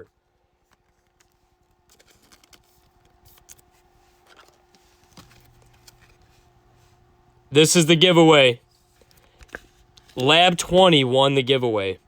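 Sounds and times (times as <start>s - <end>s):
faint electrical hum: 0.0s - 12.0s
trading cards clicking and rustling: 0.6s - 6.4s.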